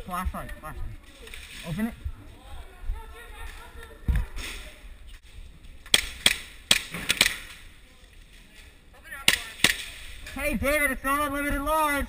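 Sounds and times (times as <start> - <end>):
airsoft gun shots: 5.9 - 7.6, 9.2 - 10.1.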